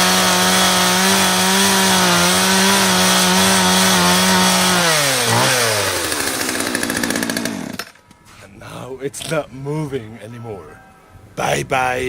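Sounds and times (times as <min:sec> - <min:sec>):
chainsaw at full throttle: 0:00.0 - 0:08.0.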